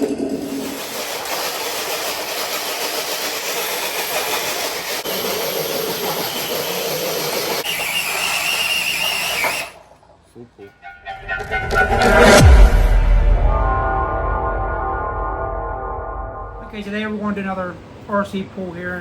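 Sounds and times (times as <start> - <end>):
motor and gear whine: 5.1 - 9.7.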